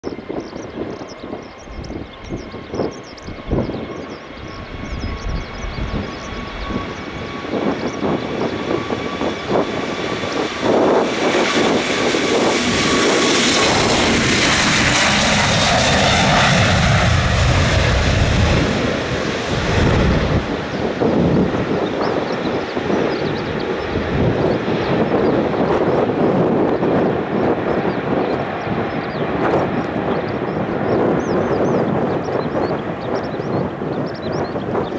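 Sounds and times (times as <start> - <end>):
jet engines whining: 0.0 - 34.9
wind buffeting microphone: 0.0 - 34.9
loud rushing jet noise: 0.8 - 34.9.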